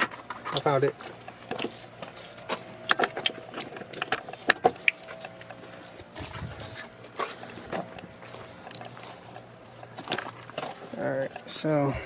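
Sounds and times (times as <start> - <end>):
metal tools clicking and rattling: 0.0 - 5.6.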